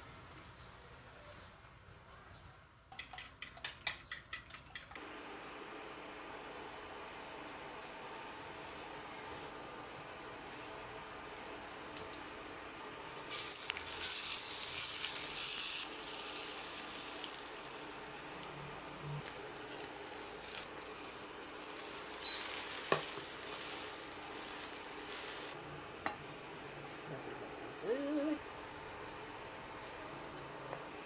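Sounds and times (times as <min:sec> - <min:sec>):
food sizzling in a pan: 0:06.6 - 0:25.6.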